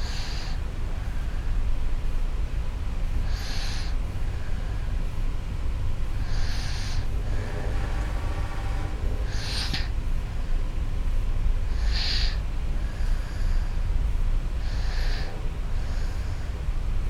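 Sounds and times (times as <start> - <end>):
steady low hum: 0.0 - 17.0
person snoring: 8.9 - 9.9.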